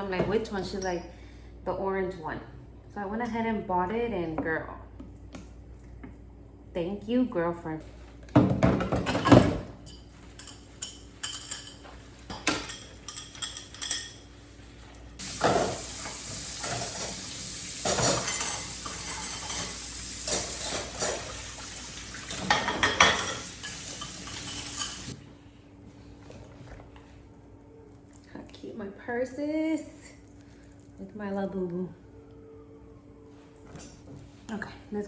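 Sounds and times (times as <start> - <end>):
dishes and cutlery clinking: 8.8 - 14.3, 15.2 - 21.6, 22.2 - 25.2
tap water running over dishes: 15.2 - 25.2.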